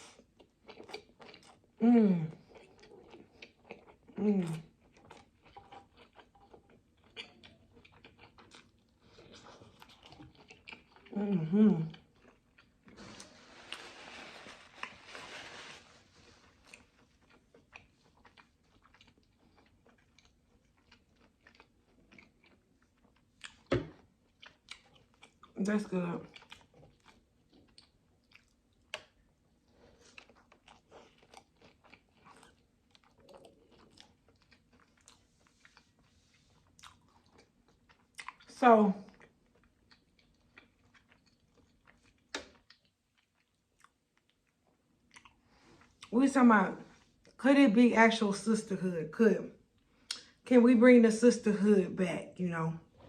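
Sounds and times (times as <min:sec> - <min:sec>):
chewing food: 0:00.0 - 0:14.0, 0:16.0 - 0:46.2
wet chewing mouth clicks: 0:50.0 - 0:50.4.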